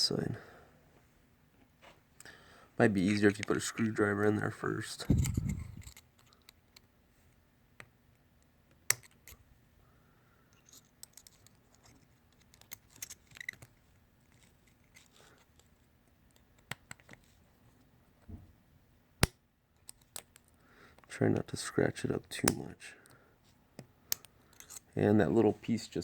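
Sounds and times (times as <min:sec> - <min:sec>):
screwdriver clicking and scraping metal: 0:05.0 - 0:06.8, 0:08.9 - 0:09.4, 0:10.6 - 0:15.7, 0:24.1 - 0:24.9.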